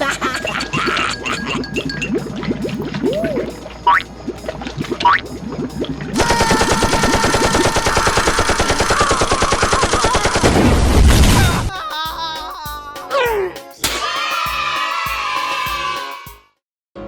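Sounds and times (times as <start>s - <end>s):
music: 0.0s - 6.2s, 11.4s - 17.0s
rapid machine-gun-like rattle: 6.2s - 10.8s.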